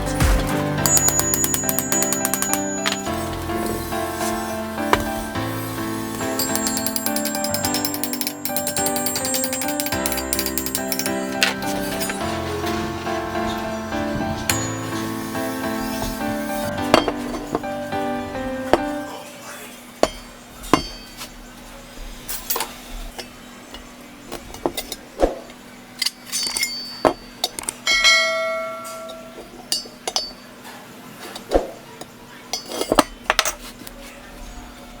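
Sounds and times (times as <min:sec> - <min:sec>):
metal tubing clinks and taps: 0:00.9 - 0:03.1, 0:06.4 - 0:12.1.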